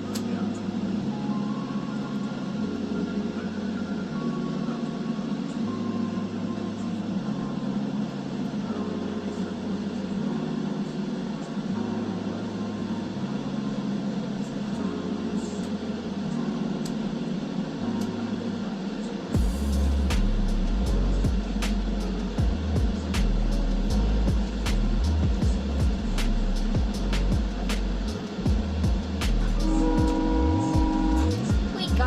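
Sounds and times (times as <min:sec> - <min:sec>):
train running rumble: 0:18.8 - 0:32.0
low two-note pattern: 0:19.4 - 0:32.0.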